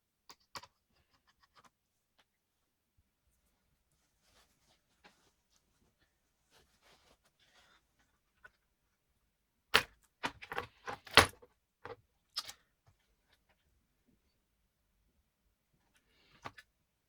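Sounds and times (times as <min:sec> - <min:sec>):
clicks and knocks of laptop parts: 0:09.8 - 0:12.0.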